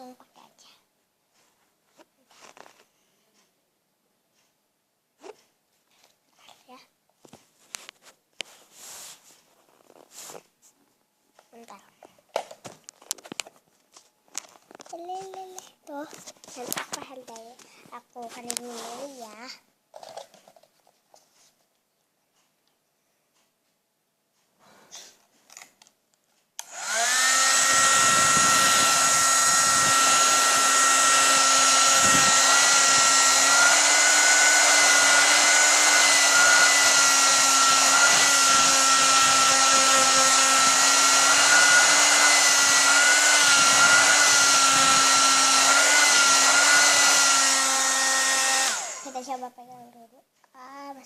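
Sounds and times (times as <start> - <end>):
hair dryer running: 26.6 - 49.2.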